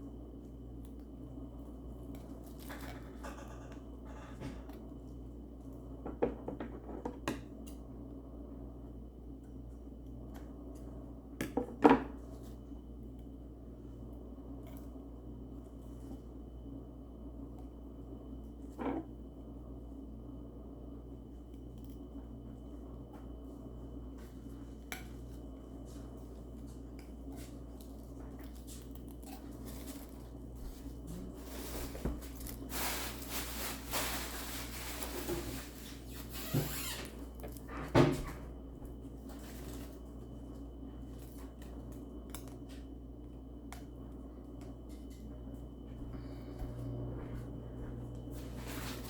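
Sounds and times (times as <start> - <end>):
low electrical hum: 0.0 - 49.0
packaging crinkling and rustling: 27.5 - 37.6.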